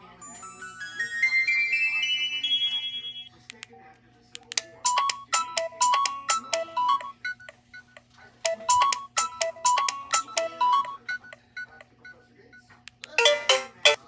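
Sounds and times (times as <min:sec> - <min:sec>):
phone ringtone beeping melody: 0:00.4 - 0:03.3, 0:04.8 - 0:11.8, 0:13.2 - 0:14.0.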